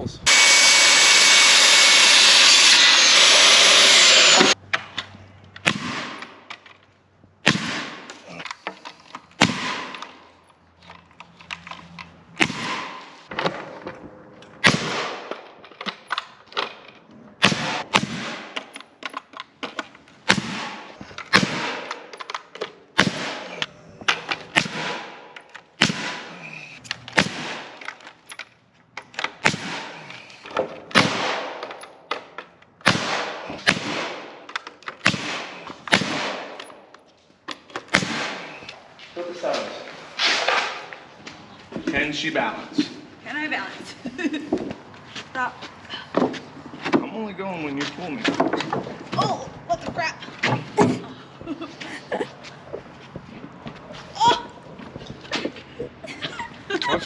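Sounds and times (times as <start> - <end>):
power saw cutting wood: 0.3 - 4.6.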